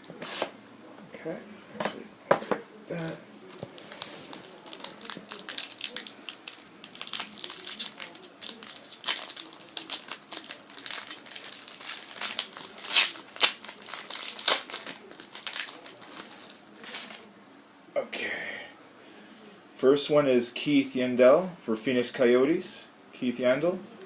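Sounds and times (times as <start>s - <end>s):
card pack wrapper crinkling: 3.6s - 17.2s.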